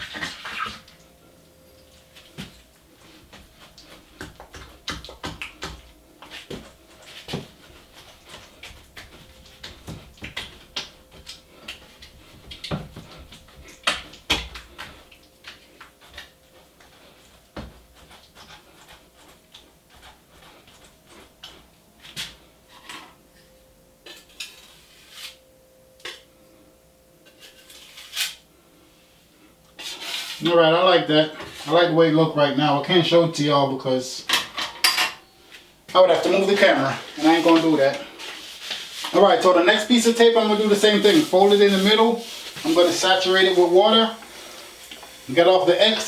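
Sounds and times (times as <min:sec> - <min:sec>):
drywall knife scraping mud pan: 0:24.5 - 0:25.4, 0:29.8 - 0:30.5.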